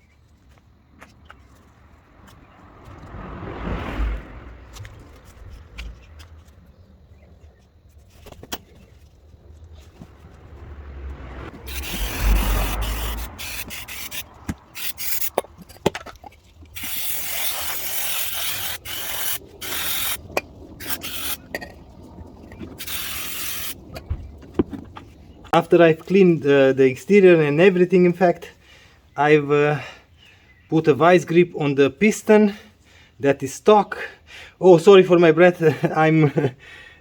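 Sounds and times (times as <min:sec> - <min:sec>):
scraping on metal: 0:11.4 - 0:25.2.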